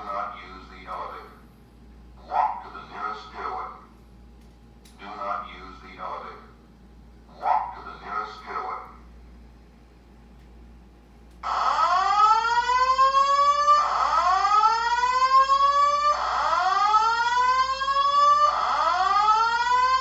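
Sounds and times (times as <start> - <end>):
fire alarm rising sweep tone: 11.4 - 20.0.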